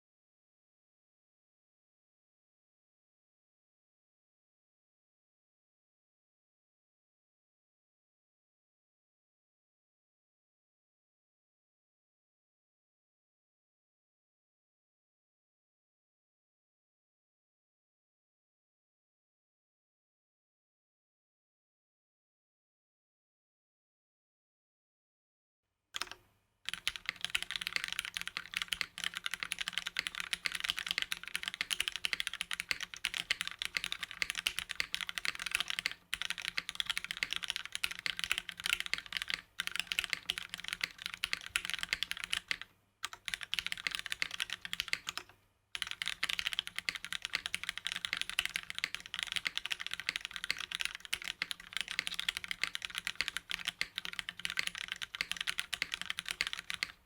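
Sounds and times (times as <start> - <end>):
mechanical keyboard typing: 26.0 - 57.0.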